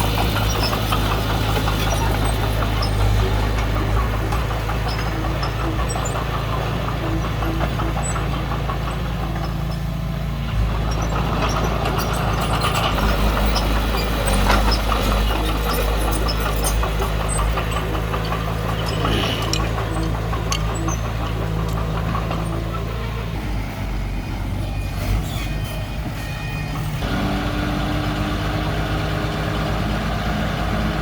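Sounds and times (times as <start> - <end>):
metallic clicks and clanks: 0.0 - 23.4
bulldozer diesel engine running: 0.0 - 31.0.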